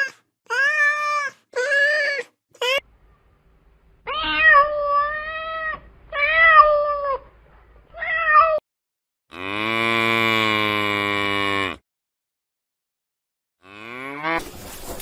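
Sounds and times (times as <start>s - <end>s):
cat meowing: 0.0s - 2.8s, 4.1s - 7.2s, 8.0s - 8.6s.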